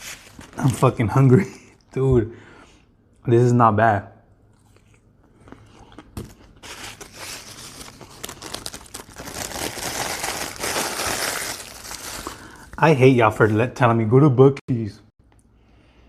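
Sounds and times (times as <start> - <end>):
food packaging crinkling: 5.8 - 12.6.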